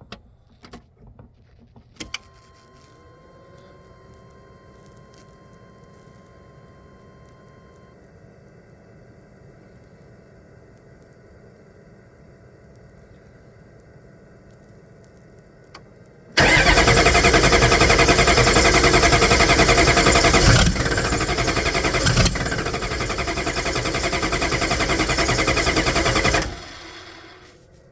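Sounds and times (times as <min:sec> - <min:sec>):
diesel engine cranking on starter: 0:16.4 - 0:27.6.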